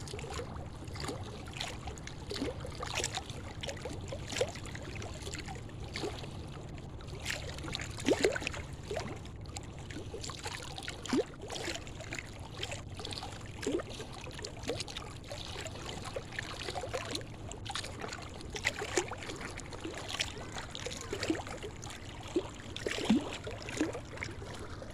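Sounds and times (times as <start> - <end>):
splashes and gurgles: 0.0 - 24.9
water slapping against concrete: 7.1 - 24.9.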